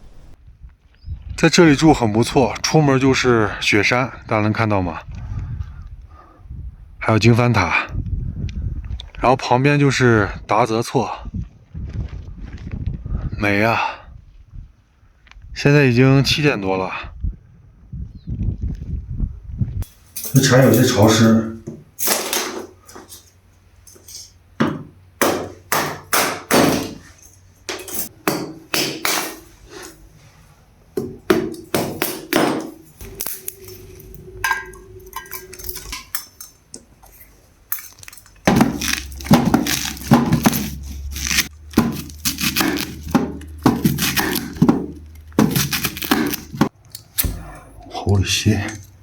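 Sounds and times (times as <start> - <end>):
firewood being chopped: 23.9 - 30.0, 31.0 - 33.6, 38.0 - 47.5
low steady hum: 29.4 - 49.0.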